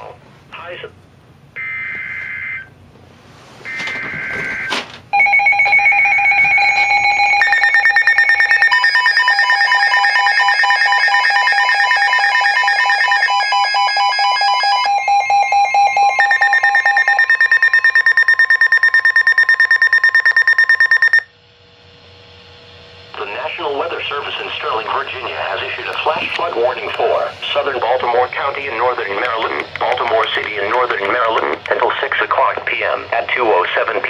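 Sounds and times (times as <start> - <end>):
data tone burst: 3.7 - 13.2, 14.9 - 21.2
pulsing electronic attention signal: 5.2 - 13.6, 14.8 - 21.2.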